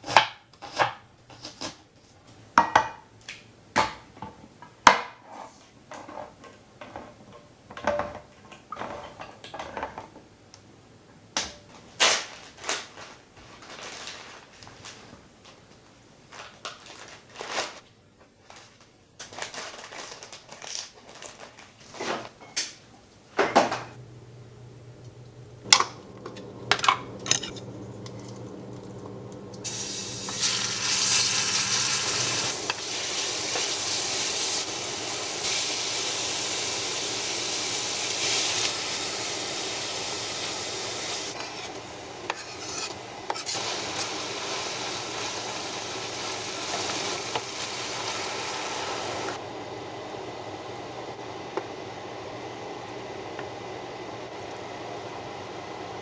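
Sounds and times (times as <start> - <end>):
steady low hum: 24.0 - 32.8
utensils clinking against dishes: 25.6 - 32.8
food sizzling in a hot pan: 26.8 - 49.4.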